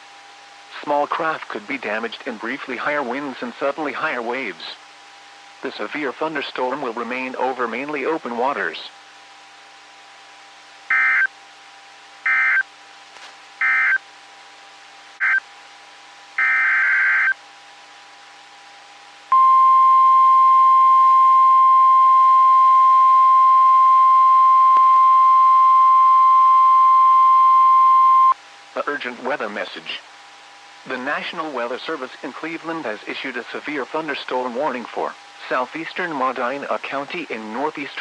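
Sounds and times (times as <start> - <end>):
short digital data bursts: 10.9 - 11.3, 12.2 - 12.6, 13.6 - 14.0, 15.2 - 15.4, 16.4 - 17.4
steady warning alarm tone: 10.9 - 11.3, 12.2 - 12.6, 13.6 - 14.0, 15.2 - 15.4, 16.4 - 17.4.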